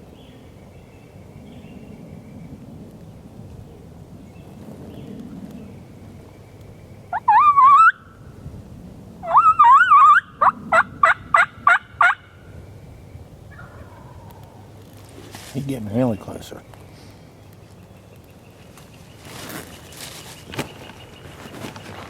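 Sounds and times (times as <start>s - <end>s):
turkey gobbling: 7.2s - 8.0s, 9.2s - 12.3s, 13.5s - 14.4s
turkey yelping: 7.2s - 8.0s, 9.2s - 12.3s, 13.5s - 14.3s.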